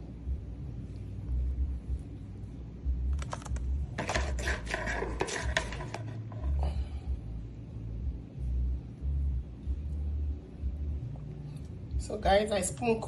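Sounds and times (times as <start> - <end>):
low background rumble: 0.0 - 4.0, 6.2 - 13.0
crinkling and scraping: 3.1 - 6.8.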